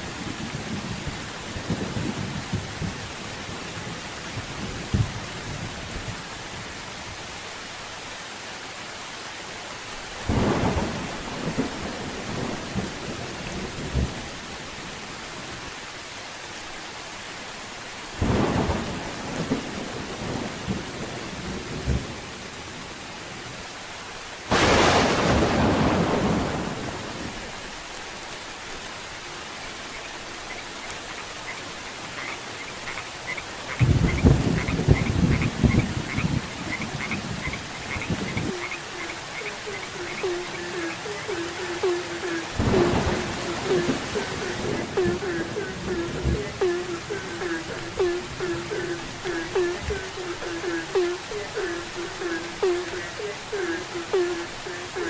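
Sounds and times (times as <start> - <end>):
steady rain: 0.0 - 55.0
thunder rumbling: 10.3 - 14.3, 18.2 - 22.1, 24.5 - 27.4, 33.8 - 55.0.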